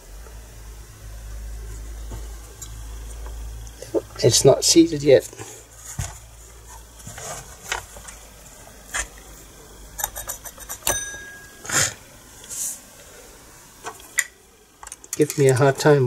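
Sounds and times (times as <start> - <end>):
metal clicks and scrapes: 10.0 - 11.0
sharp ringing metal clink: 10.8 - 11.7.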